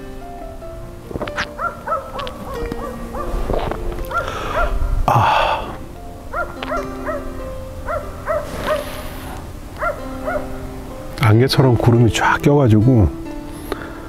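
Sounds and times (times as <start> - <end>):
gentle gliding melody: 0.0 - 14.0
brief hiss: 8.4 - 9.5.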